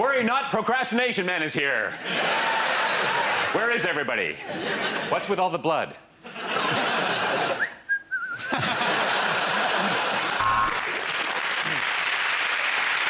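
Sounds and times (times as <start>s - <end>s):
studio audience laughing: 2.0s - 5.4s, 6.2s - 7.8s, 8.4s - 12.1s
wavering whistle: 7.6s - 8.5s
audience applauding: 9.2s - 13.0s.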